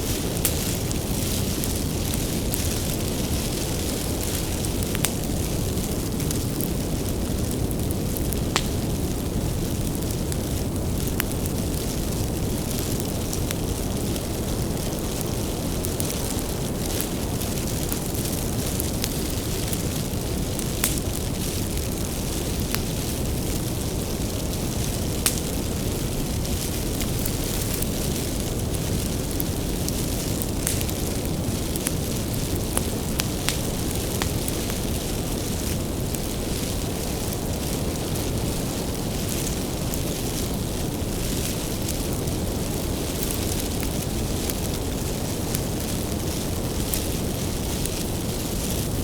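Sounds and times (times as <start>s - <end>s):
bonfire crackling: 0.0s - 49.0s
low rumble of flames: 0.0s - 49.0s
sharp pops and snaps: 30.6s - 31.1s.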